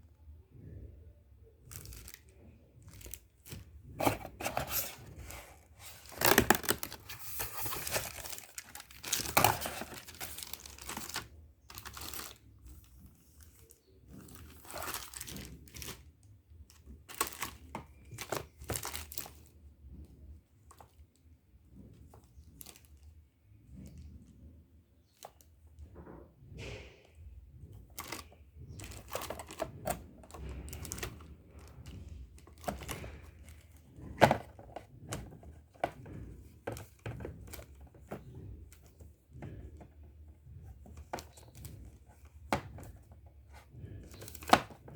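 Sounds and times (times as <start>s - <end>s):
packaging rustling: 1.7s - 16.1s, 16.7s - 19.5s, 27.9s - 39.0s
packaging crinkling and tearing: 2.9s - 12.5s, 14.2s - 16.0s.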